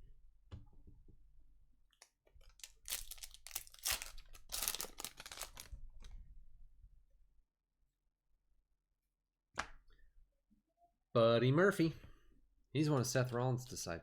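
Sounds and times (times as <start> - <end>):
wrapper tearing and crinkling: 2.4 - 5.8.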